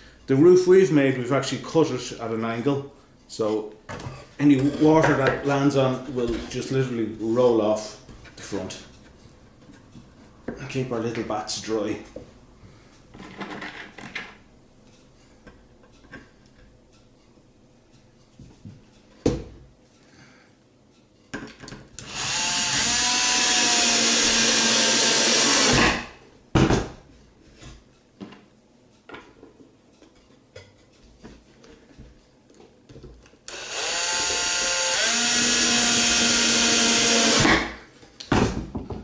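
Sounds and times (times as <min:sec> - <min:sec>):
power drill driving screws: 0:22.0 - 0:26.1, 0:33.5 - 0:37.7.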